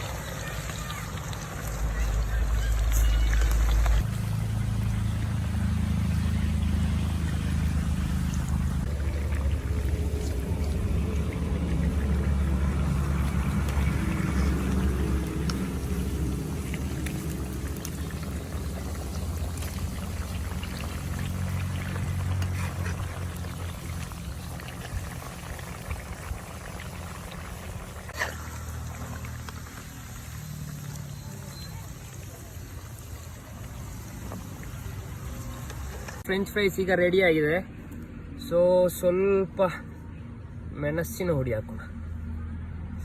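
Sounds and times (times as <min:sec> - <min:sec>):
fries sizzling in hot oil: 0:00.0 - 0:36.7
constant low hum: 0:01.3 - 0:31.0.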